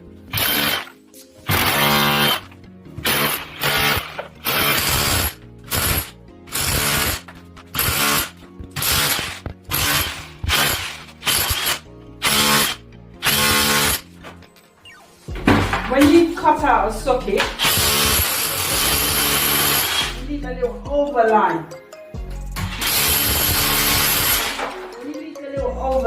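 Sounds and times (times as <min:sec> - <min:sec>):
power tool running in bursts: 0:00.3 - 0:00.9, 0:01.5 - 0:14.0, 0:17.6 - 0:20.2, 0:22.7 - 0:24.6.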